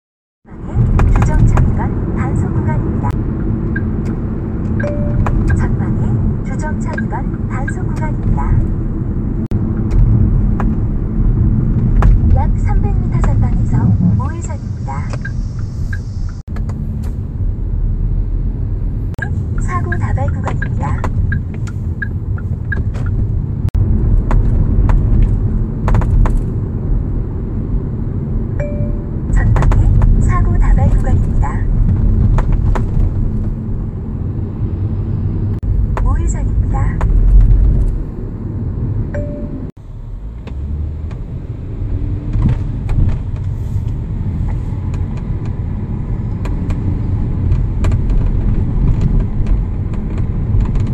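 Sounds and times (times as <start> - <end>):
road and tyre rumble: 0.4 - 50.9
sunroof rattling and creaking: 19.4 - 26.7, 29.3 - 34.0, 35.6 - 38.2, 42.2 - 50.9.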